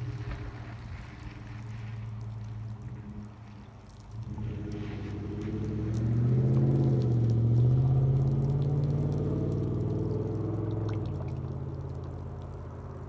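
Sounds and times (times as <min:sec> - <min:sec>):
pickup truck engine accelerating: 0:04.2 - 0:13.0.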